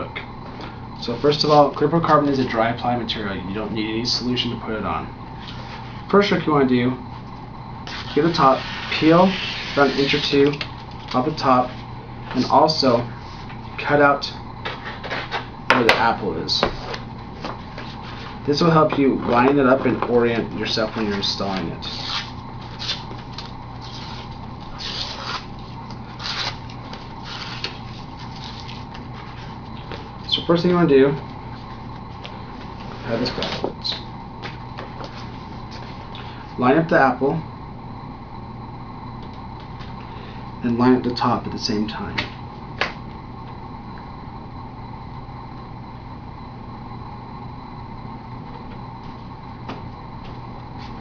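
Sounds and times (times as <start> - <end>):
background hum and hiss: 0.0 - 51.0
vinyl sheet rustling and crinkling: 16.6 - 30.4, 31.1 - 36.1.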